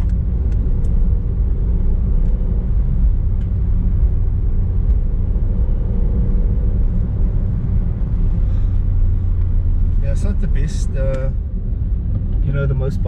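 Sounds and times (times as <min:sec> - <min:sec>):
car engine rumble: 0:00.0 - 0:13.0
road noise: 0:00.0 - 0:13.0.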